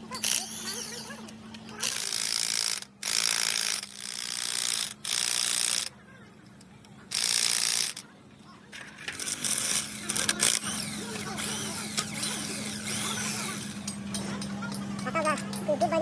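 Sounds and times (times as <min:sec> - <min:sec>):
power wrench bursts: 0:01.7 - 0:05.9, 0:07.1 - 0:08.0, 0:09.1 - 0:13.9.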